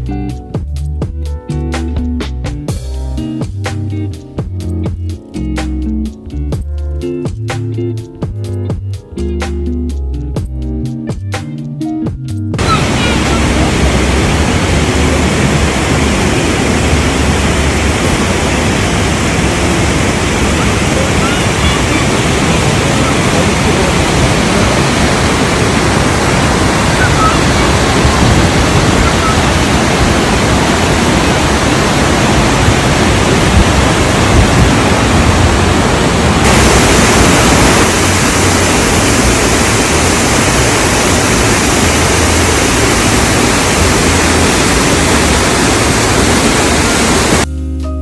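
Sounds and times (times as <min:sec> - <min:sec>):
waterfall roaring: 0:12.6 - 0:47.5.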